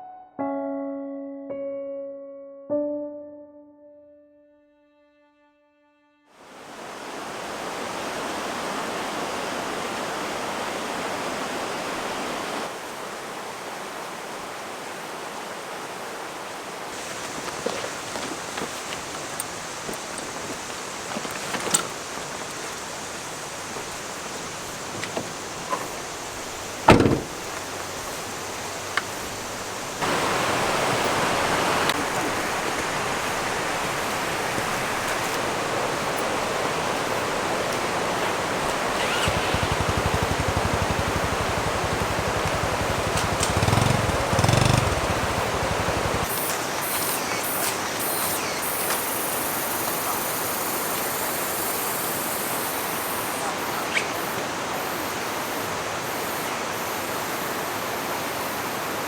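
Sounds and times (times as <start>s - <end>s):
creek water rushing: 6.4s - 59.0s
loud thump: 26.8s - 27.5s.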